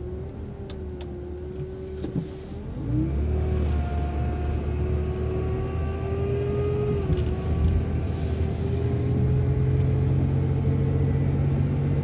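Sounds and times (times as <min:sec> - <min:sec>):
bus drivetrain whine rising: 0:00.0 - 0:12.0
bus engine humming: 0:00.0 - 0:12.0.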